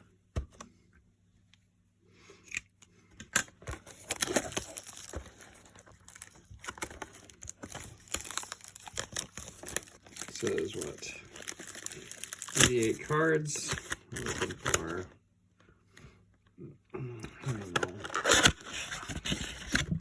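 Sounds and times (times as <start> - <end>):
plastic wrapping crinkling and tearing: 3.6 - 15.1, 17.4 - 20.0.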